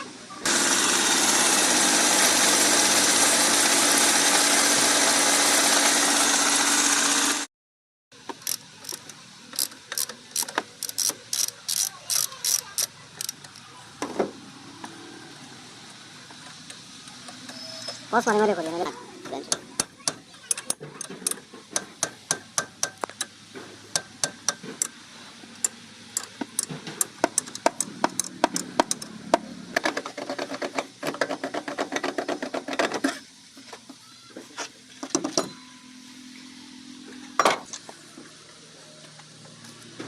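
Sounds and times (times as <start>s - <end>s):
metallic tool clicks and knocks: 19.5s - 23.3s, 25.6s - 29.1s.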